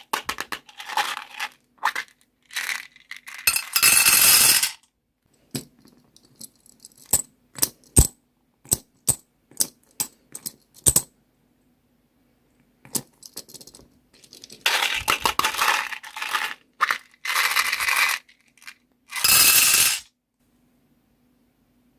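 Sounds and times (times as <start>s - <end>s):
beads dropping onto hard surface: 19.1s - 20.0s.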